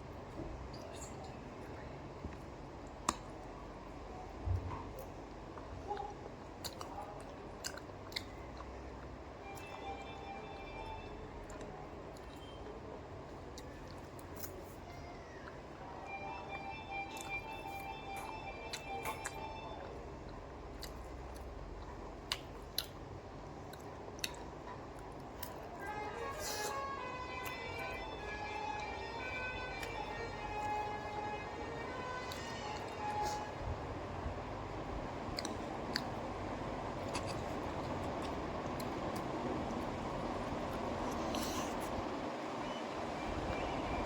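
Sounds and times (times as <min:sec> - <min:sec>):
person chewing pasta: 0:05.0 - 0:09.8, 0:16.9 - 0:29.0, 0:34.9 - 0:42.2.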